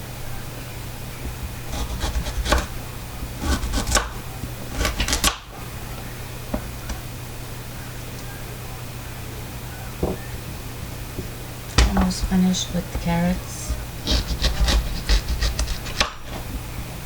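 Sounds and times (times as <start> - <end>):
low steady hum: 0.0 - 17.0
knife chopping on cutting board: 1.7 - 2.7, 3.4 - 5.4, 14.0 - 16.4.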